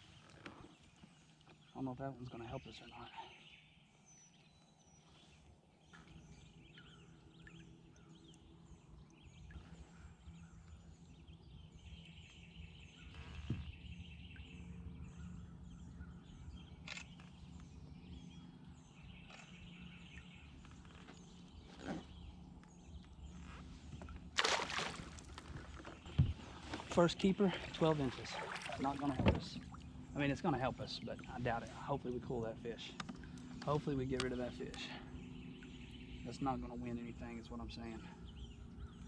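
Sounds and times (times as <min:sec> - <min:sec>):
trilling bird song: 0:00.0 - 0:24.2, 0:25.9 - 0:39.0
birds chirping: 0:00.0 - 0:39.0
low steady background: 0:25.4 - 0:39.0.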